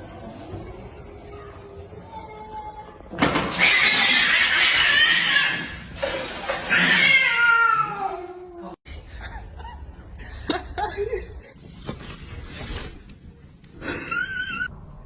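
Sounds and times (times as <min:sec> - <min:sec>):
animal crying out: 0:03.5 - 0:05.9.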